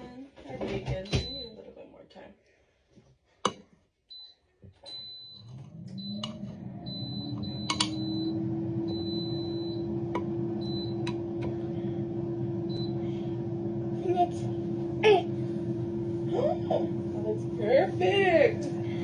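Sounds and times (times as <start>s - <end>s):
kitchen appliance motor humming: 4.9s - 19.0s.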